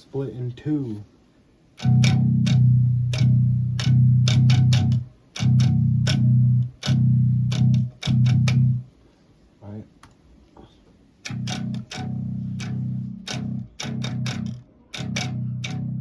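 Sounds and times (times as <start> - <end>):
electric bass metal riff: 1.8 - 8.9, 11.2 - 16.0.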